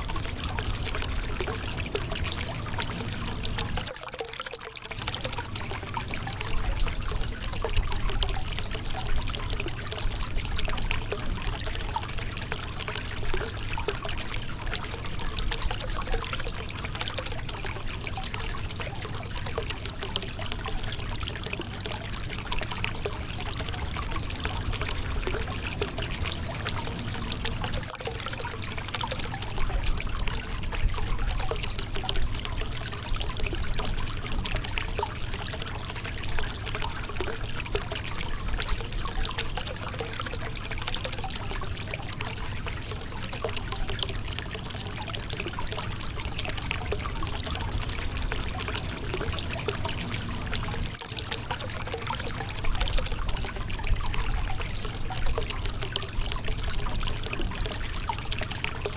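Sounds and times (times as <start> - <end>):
river water splashing over rocks: 0.0 - 4.3, 34.1 - 58.9.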